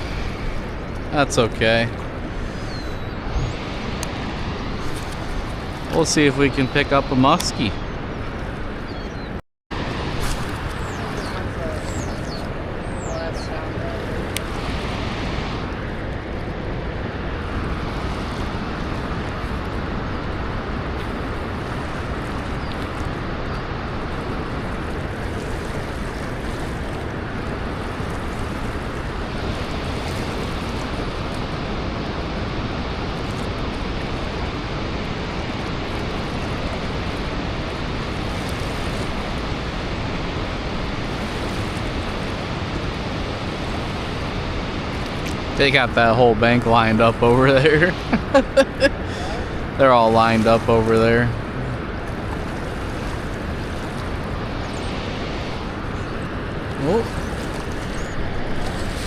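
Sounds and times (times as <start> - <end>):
water rushing over dam spillway: 17.0 - 59.0.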